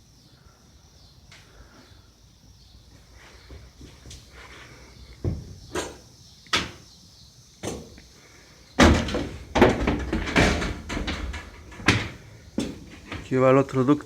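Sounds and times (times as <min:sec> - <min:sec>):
knocks and thumps: 0:05.2 - 0:06.8, 0:07.6 - 0:08.1, 0:08.8 - 0:13.4.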